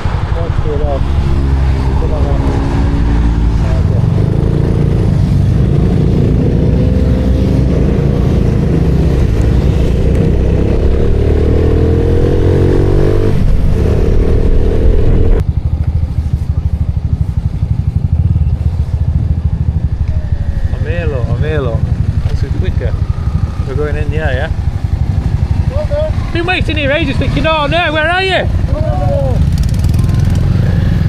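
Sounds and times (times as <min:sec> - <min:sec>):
low pulsing engine note: 0:00.0 - 0:26.7
small motorcycle engine accelerating: 0:29.2 - 0:31.0.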